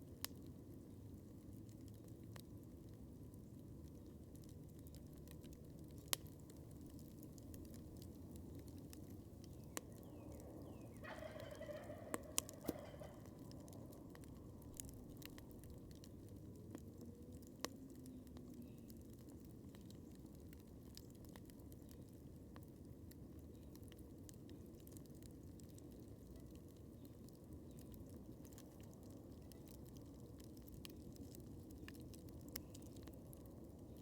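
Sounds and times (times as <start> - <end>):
campfire crackling and popping: 0.0 - 34.0
turkey gobbling: 10.6 - 13.4.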